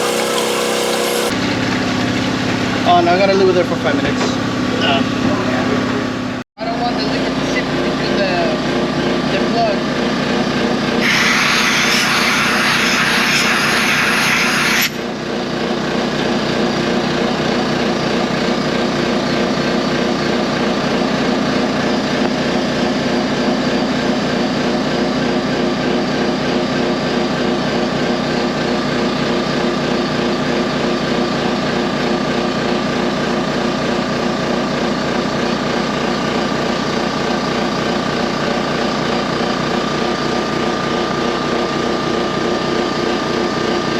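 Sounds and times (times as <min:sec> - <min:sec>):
air blow gun hissing: 0:00.0 - 0:01.3, 0:11.0 - 0:15.0
machinery humming: 0:00.0 - 0:01.4.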